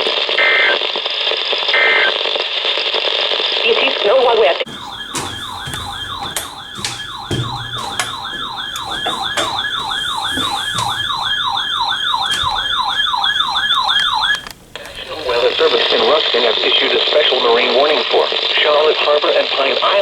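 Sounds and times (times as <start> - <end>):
electronic alert siren: 4.7 - 14.5.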